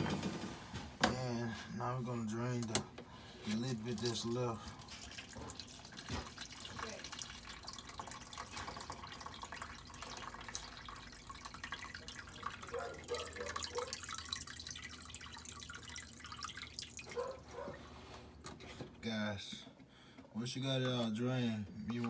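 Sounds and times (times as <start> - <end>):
water dripping into a pan: 3.7 - 17.4.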